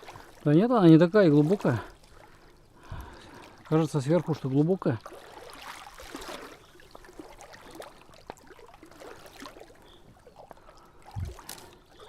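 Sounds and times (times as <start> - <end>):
flowing river water: 0.0 - 12.0
person wading through water: 0.0 - 12.0.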